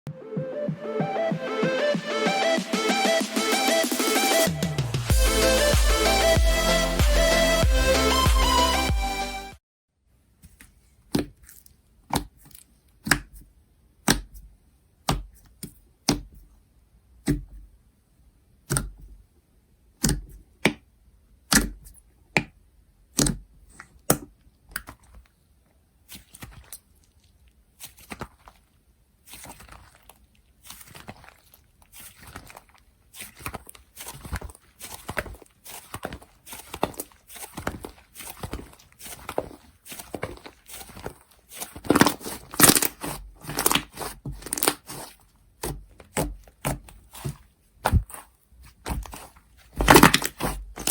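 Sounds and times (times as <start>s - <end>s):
slime popping and crackling: 26.1s - 50.9s.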